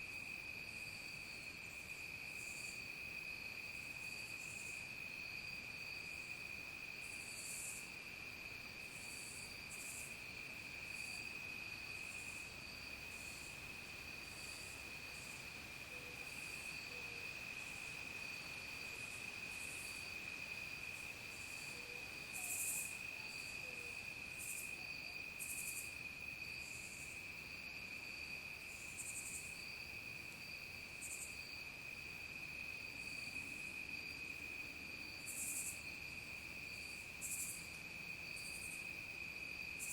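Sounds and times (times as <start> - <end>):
crickets trilling: 0.0 - 39.9
high-pitched insect calls: 20.9 - 26.0, 28.7 - 29.7, 31.0 - 31.5, 36.8 - 38.9.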